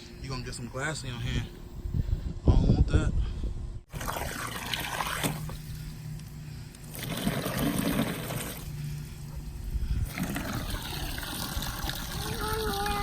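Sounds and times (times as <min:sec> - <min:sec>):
water pouring into a pool: 0:03.9 - 0:05.6, 0:06.9 - 0:08.7, 0:10.0 - 0:13.0.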